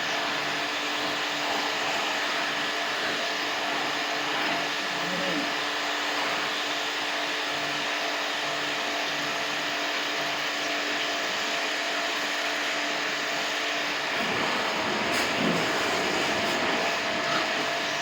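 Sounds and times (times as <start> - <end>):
pump washer running: 0.0 - 18.0
water spray hissing: 14.2 - 18.0.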